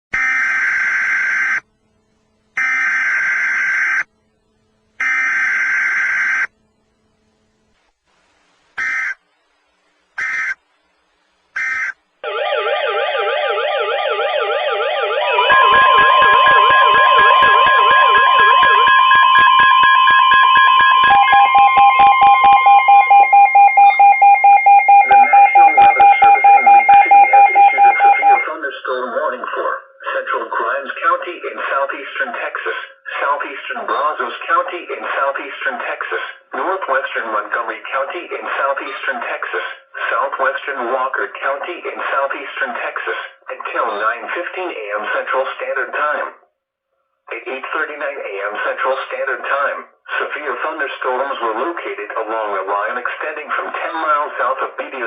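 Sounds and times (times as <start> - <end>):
screechy data tones: 10.2 - 10.6, 11.6 - 12.0, 15.3 - 28.4
warbling siren tone: 11.6 - 28.4
steady attention tone: 13.8 - 28.5
rapid pulsing beep: 15.3 - 28.5.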